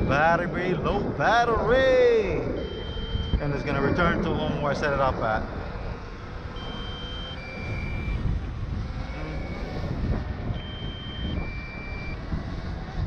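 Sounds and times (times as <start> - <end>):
two-tone electronic beep: 0.0 - 0.9, 2.5 - 4.8, 5.8 - 8.4, 9.0 - 12.2
wind on microphone: 0.0 - 13.0.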